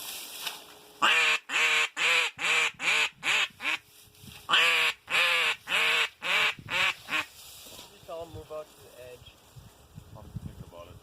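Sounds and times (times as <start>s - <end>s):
duck quacking: 1.0s - 3.8s, 4.5s - 7.3s.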